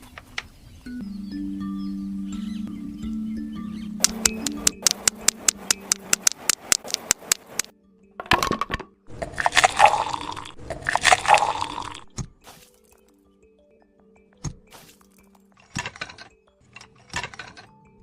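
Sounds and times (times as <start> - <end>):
small taps on mini bricks: 4.0 - 7.7.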